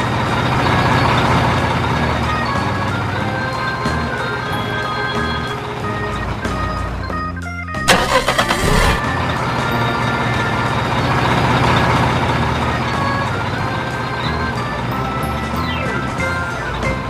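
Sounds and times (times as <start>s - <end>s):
truck engine cranking and running: 7.9s - 14.9s.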